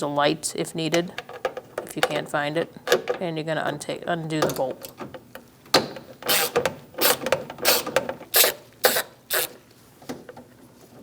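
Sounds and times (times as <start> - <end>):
ratchet clicking: 6.2 - 9.6.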